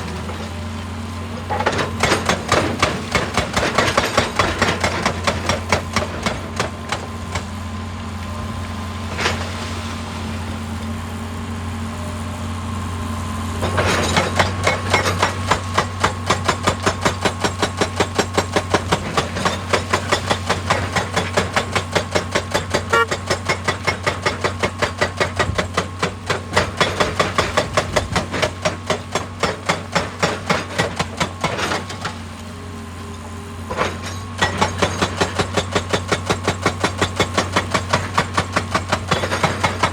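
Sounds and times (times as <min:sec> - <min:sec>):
hydraulic rock breaker hammering: 0:00.0 - 0:07.8, 0:13.6 - 0:39.9
diesel engine drone: 0:04.4 - 0:35.2.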